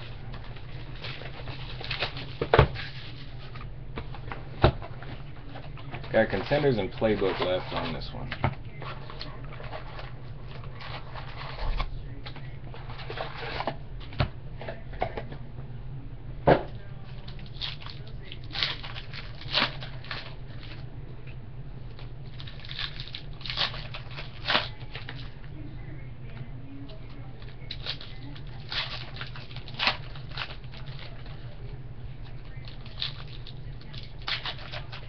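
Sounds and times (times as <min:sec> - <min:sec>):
trading cards rustling and crinkling: 0:00.0 - 0:13.8
steady low hum: 0:00.0 - 0:35.0.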